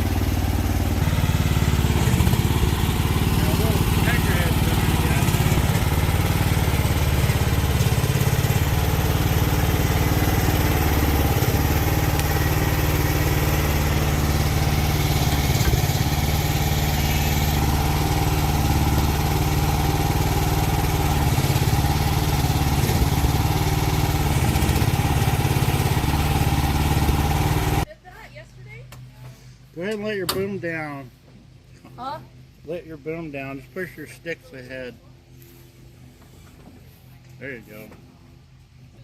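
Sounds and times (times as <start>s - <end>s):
excavator engine running: 0.0s - 27.9s.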